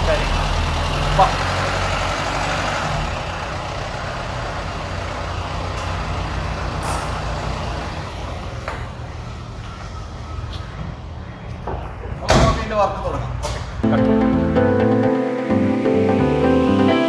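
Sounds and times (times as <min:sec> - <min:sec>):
vehicle engine running: 0:00.0 - 0:08.6.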